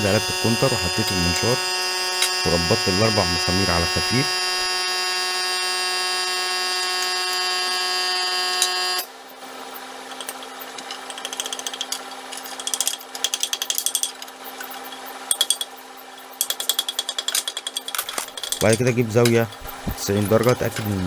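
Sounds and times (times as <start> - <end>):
power tool motor humming: 0.0 - 9.1, 18.0 - 21.0
rapid ratchet clicking: 10.0 - 21.0.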